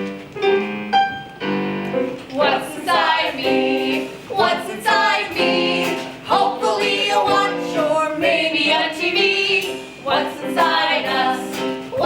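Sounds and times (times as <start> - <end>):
instrumental accompaniment: 0.0 - 12.0
voices singing held notes: 2.3 - 12.0.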